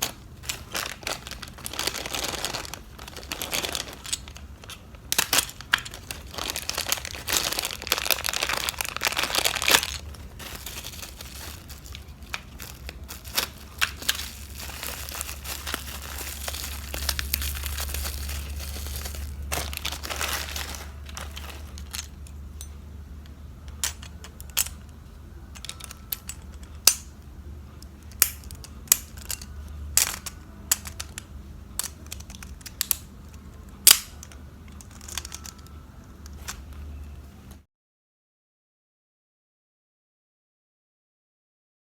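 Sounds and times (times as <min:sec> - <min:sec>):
plastic packaging crinkling and tearing: 0:00.0 - 0:22.3
small hard objects clicking: 0:00.0 - 0:22.4, 0:27.8 - 0:36.5.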